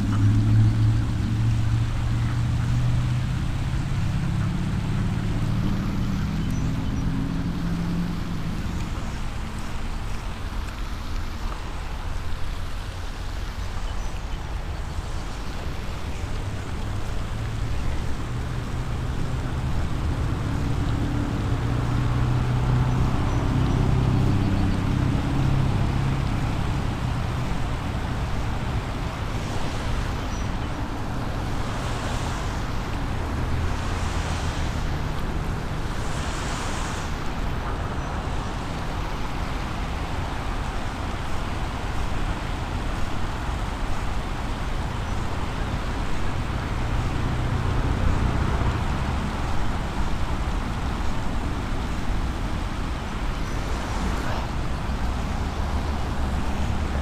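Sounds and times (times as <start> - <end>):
soft hissing: 26.7 - 41.1.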